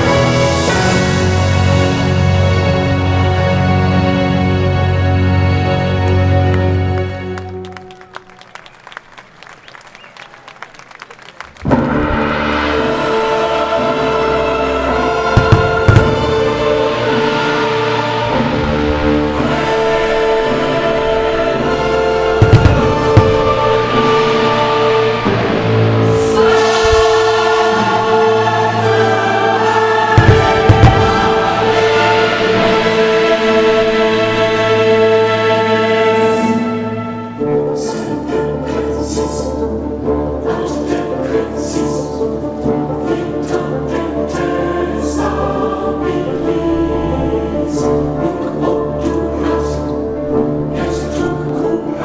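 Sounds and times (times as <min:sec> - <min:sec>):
choir singing held chords: 0:00.0 - 0:08.1, 0:11.5 - 0:52.0
orchestral music: 0:00.0 - 0:52.0.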